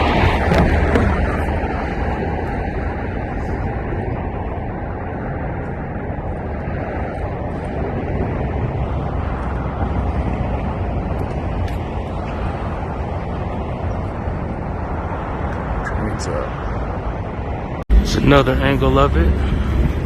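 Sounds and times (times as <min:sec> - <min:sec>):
low rumble of street traffic: 0:00.0 - 0:20.0.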